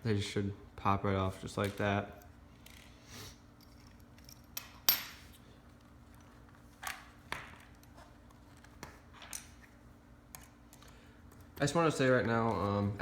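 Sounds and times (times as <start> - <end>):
small metal parts clinking: 3.6 - 5.2.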